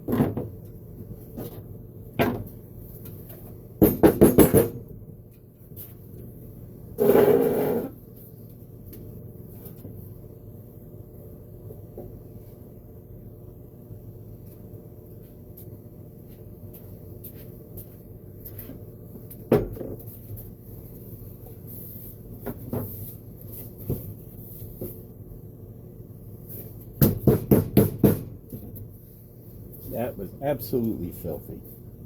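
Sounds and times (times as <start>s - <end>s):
steady low hum: 28.3s - 32.0s.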